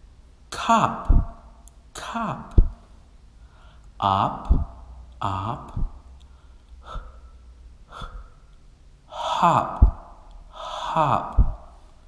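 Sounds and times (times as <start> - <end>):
man saying short syllables: 0.5 - 2.9, 4.0 - 6.1, 10.8 - 11.9
man breathing: 3.3 - 4.8, 5.7 - 12.0.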